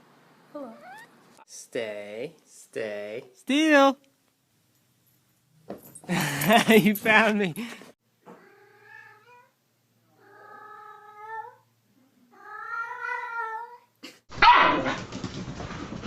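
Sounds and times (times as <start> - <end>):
cat meowing: 0.7 - 1.1, 12.3 - 13.8.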